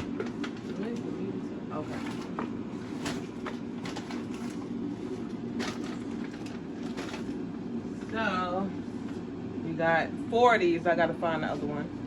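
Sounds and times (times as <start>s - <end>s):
grocery bags rustling: 0.0s - 7.5s.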